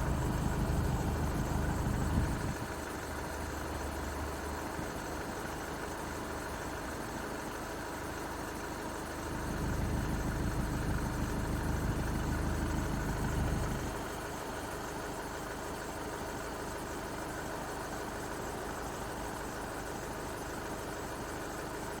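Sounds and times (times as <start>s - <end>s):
low rumble: 0.0s - 2.6s
diesel engine idling: 0.0s - 4.4s, 9.1s - 14.4s.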